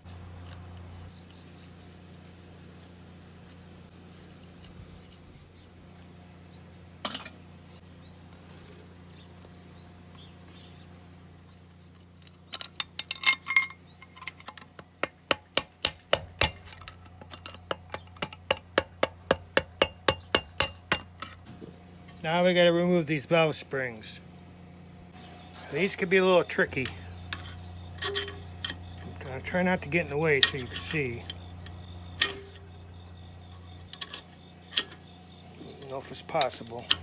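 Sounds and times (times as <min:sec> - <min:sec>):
metal parts clattering: 0:12.2 - 0:14.8, 0:26.8 - 0:32.8
metallic clink: 0:12.5 - 0:14.6, 0:27.3 - 0:29.1, 0:29.8 - 0:32.9
hammer tapping on metal: 0:15.0 - 0:21.4.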